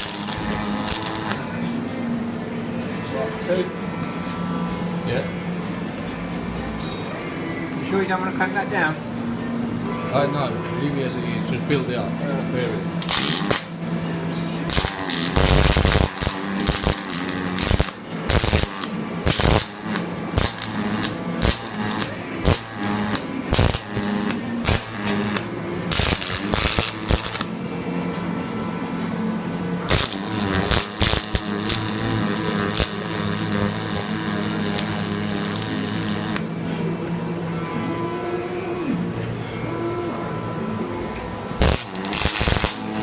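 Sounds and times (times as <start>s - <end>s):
arc welder crackling: 0.0s - 1.5s, 13.0s - 27.6s, 29.8s - 36.6s, 41.6s - 43.0s
low machine hum: 0.0s - 43.0s.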